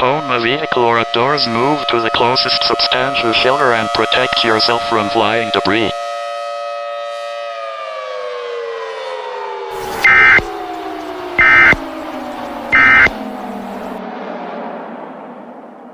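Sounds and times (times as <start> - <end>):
warning siren winding down: 0.0 - 15.9
digital data tone bursts: 9.8 - 10.5, 11.4 - 11.8, 12.7 - 13.2.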